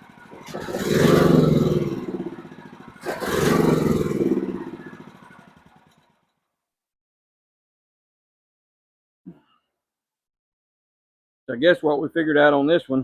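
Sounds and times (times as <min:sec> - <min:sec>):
small generator engine surging: 0:00.0 - 0:06.3.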